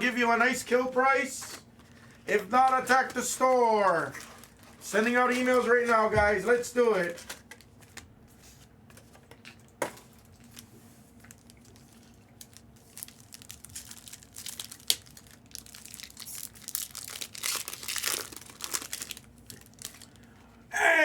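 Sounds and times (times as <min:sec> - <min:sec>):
plastic wrapping crinkling and tearing: 0:02.4 - 0:06.0, 0:09.4 - 0:20.3.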